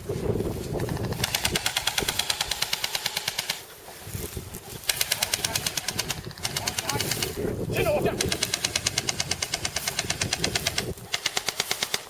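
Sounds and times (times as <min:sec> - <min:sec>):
airsoft gun firing full-auto: 0:01.1 - 0:03.6, 0:08.1 - 0:12.0.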